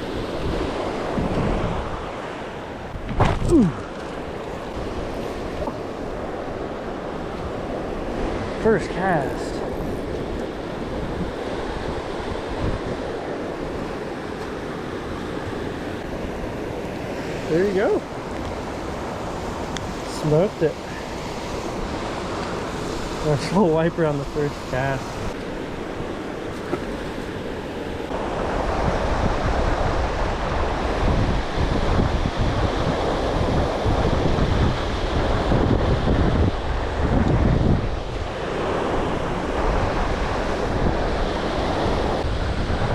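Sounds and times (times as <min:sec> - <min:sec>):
river water rushing: 0:00.0 - 0:30.9
wind buffeting microphone: 0:00.0 - 0:42.9.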